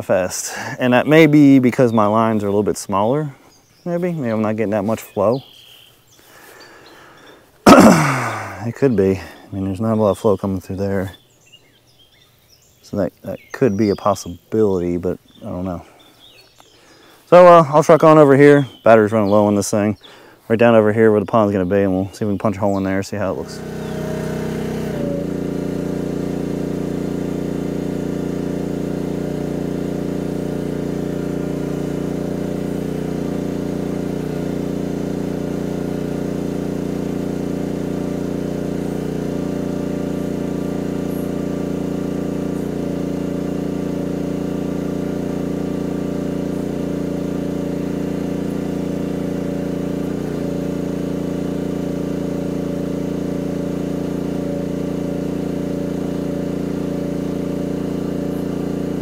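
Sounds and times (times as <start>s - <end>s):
excavator engine running: 23.3s - 59.0s.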